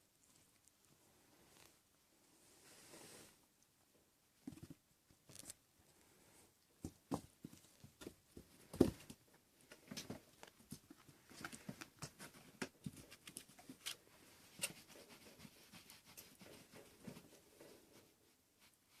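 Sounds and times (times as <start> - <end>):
kittens scuffling and thumping: 4.3 - 19.0.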